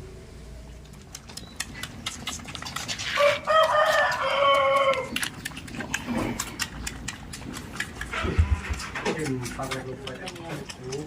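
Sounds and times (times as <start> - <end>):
rooster crowing: 3.2 - 5.1.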